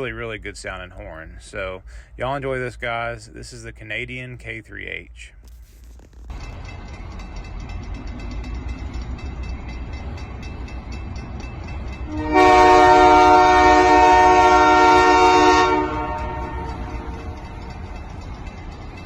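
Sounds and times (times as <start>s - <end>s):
locomotive rumbling: 0.0s - 19.0s
chime air horn blast: 12.0s - 17.6s.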